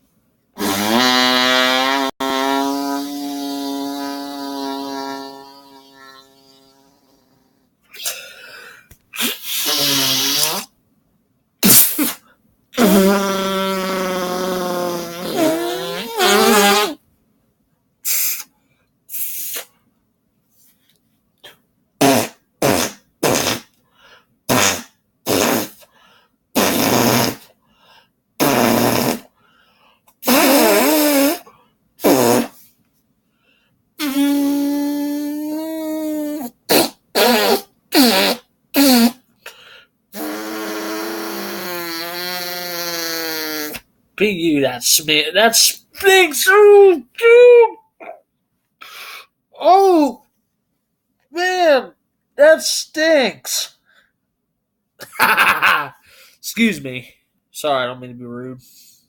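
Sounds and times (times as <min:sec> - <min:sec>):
person making fart noises: 0:00.6 - 0:08.3, 0:09.1 - 0:10.8, 0:11.6 - 0:12.2, 0:12.8 - 0:17.0, 0:18.0 - 0:18.5, 0:19.1 - 0:19.7, 0:22.0 - 0:23.8, 0:24.5 - 0:25.9, 0:26.5 - 0:27.5, 0:28.4 - 0:29.4, 0:30.2 - 0:32.7, 0:34.0 - 0:43.9, 0:55.0 - 0:56.0.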